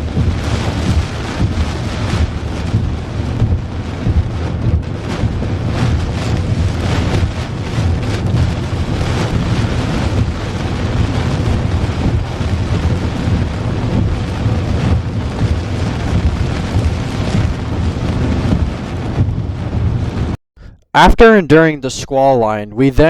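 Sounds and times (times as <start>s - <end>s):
wind rumble on microphone: 0.0s - 20.4s
gusty wind rushing: 0.0s - 23.0s.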